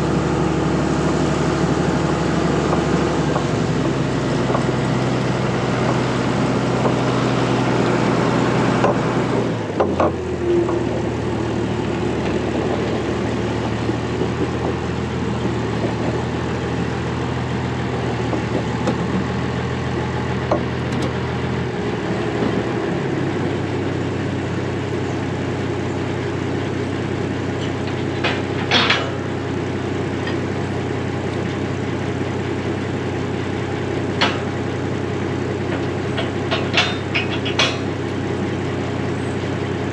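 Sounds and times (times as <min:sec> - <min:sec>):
diesel engine running: 0:00.0 - 0:39.9
short rattle: 0:27.6 - 0:29.5, 0:34.1 - 0:38.7.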